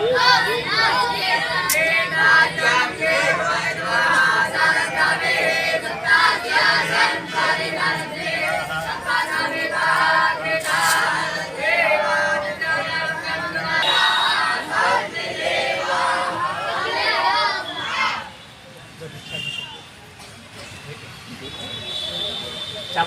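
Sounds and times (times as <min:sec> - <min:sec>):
group of voices singing: 0:00.0 - 0:18.3.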